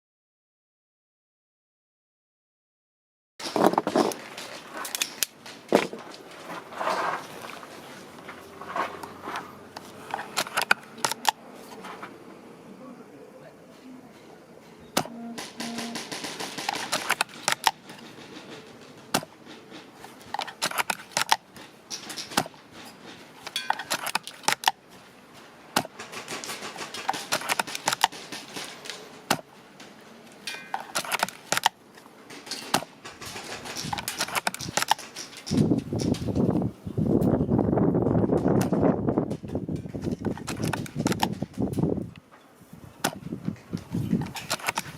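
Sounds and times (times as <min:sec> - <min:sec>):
rifle shots: 0:15.0 - 0:17.8.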